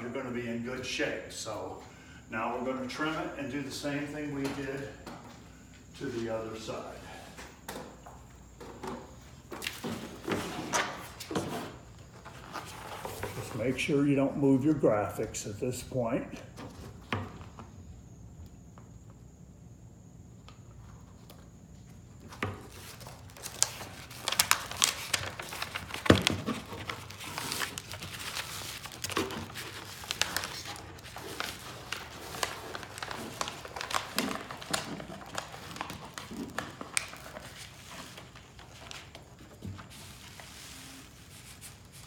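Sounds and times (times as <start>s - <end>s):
vinyl sheet crinkling: 22.6s - 42.0s.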